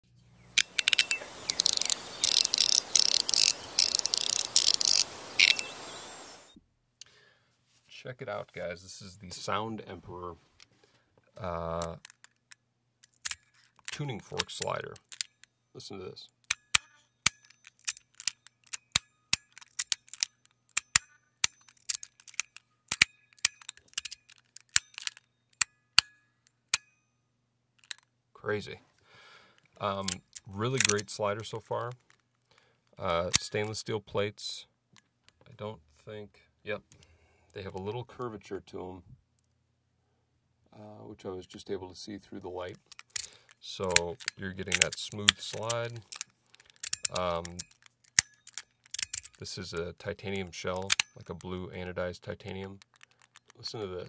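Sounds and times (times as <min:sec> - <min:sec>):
metal plates clicking: 0:00.6 - 0:05.7
metal slider clicks: 0:00.6 - 0:06.3, 0:13.0 - 0:15.5, 0:16.4 - 0:26.9, 0:30.0 - 0:31.2, 0:42.8 - 0:51.6.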